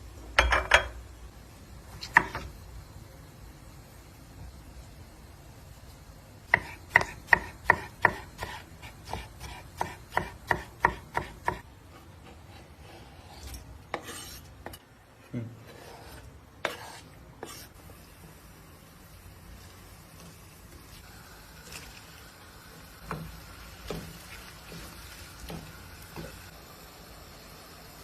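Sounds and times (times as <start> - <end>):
knife chopping on cutting board: 6.5 - 11.6.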